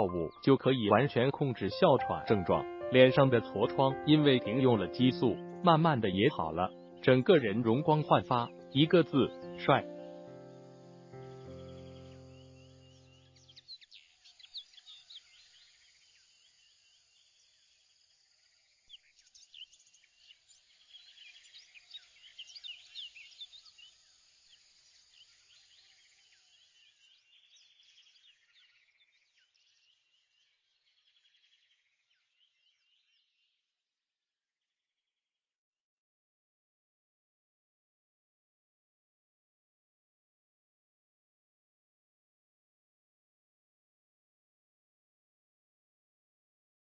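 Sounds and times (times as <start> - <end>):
faint bird chirps: 0.0 - 33.6.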